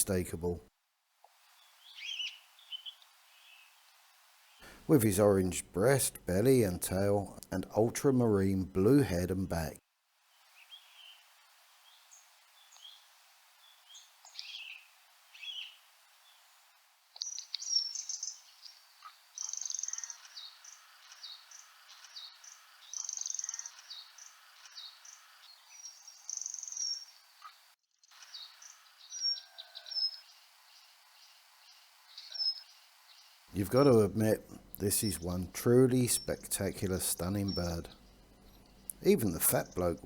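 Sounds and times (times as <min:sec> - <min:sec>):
faint hiss: 0:00.0 - 0:40.0
small birds calling: 0:01.4 - 0:09.7, 0:10.3 - 0:40.0.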